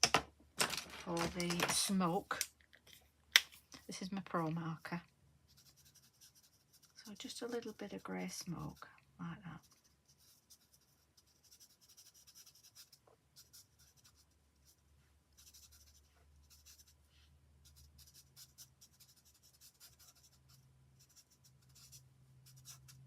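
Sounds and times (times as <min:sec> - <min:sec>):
marker scratching on card: 0:05.5 - 0:08.7, 0:09.6 - 0:17.0, 0:17.6 - 0:23.0.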